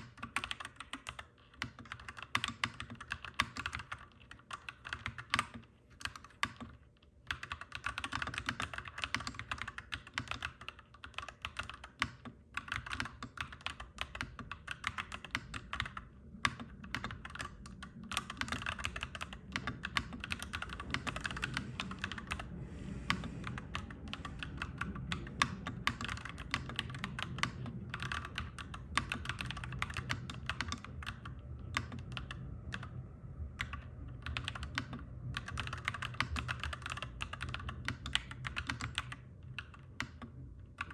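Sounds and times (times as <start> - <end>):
mechanical keyboard typing: 0.0 - 22.5, 23.1 - 40.9
low background rumble: 12.3 - 40.9.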